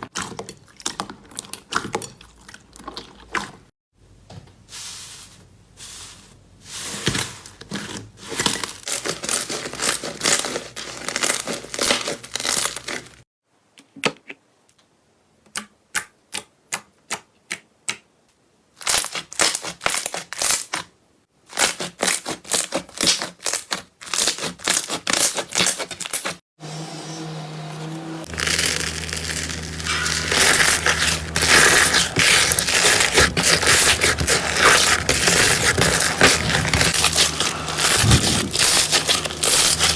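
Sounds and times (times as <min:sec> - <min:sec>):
slime crackling and popping: 0:28.3 - 0:39.9.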